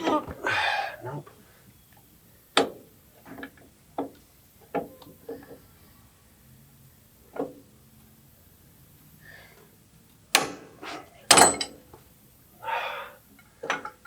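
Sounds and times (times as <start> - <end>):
pipe wrench clanking on metal: 11.3 - 11.8.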